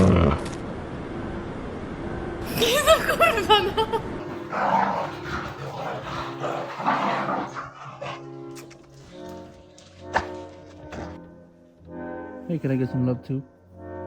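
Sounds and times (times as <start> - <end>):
dog vocalising roughly: 4.2 - 8.3.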